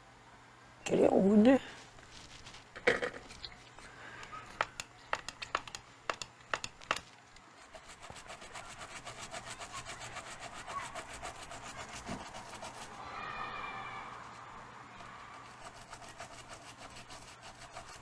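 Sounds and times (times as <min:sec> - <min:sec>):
clicks and taps: 0:04.2 - 0:07.1
brush scrubbing circuit board: 0:07.6 - 0:13.0, 0:14.1 - 0:18.0.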